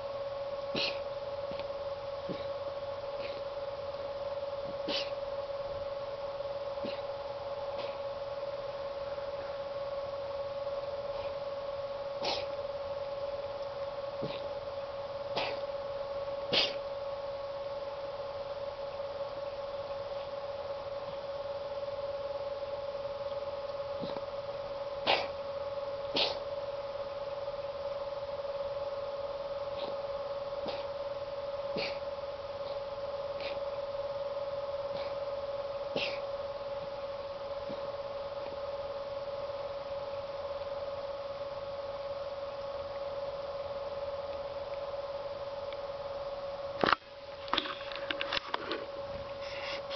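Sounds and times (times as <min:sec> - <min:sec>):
electrical hum with hiss: 0:00.0 - 0:49.9
pet coughing: 0:00.7 - 0:01.1, 0:02.3 - 0:02.6, 0:04.8 - 0:05.2, 0:06.8 - 0:08.0, 0:12.2 - 0:12.6, 0:14.2 - 0:14.5, 0:15.3 - 0:15.7, 0:16.5 - 0:16.8, 0:25.0 - 0:25.4, 0:26.1 - 0:26.5, 0:30.6 - 0:31.0, 0:31.7 - 0:32.1, 0:34.9 - 0:35.2, 0:35.9 - 0:36.3.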